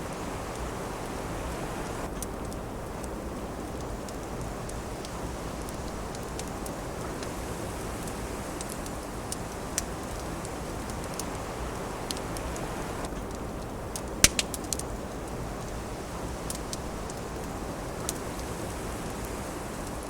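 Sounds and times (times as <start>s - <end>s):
wind rushing: 0.0s - 2.1s
wood fire crackling and popping: 0.0s - 20.0s.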